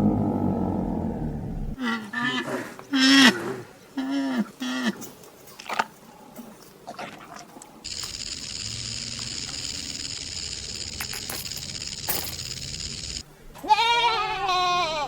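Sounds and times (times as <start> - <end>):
steady high hiss: 7.9 - 13.2
goat bleating: 13.6 - 15.0.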